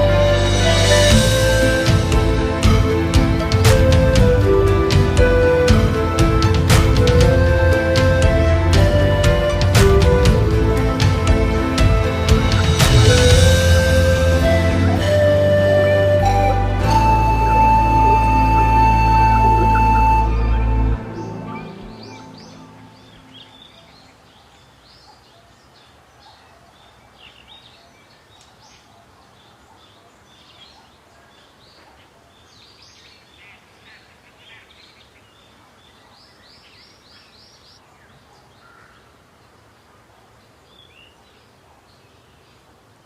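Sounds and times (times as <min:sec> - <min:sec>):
birds chirping and singing: 0:10.2 - 0:38.9
faint steady hiss: 0:10.7 - 0:43.0.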